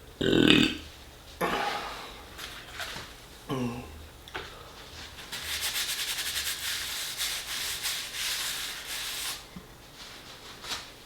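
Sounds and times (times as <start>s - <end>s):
rapid dry rubbing: 5.1s - 9.4s.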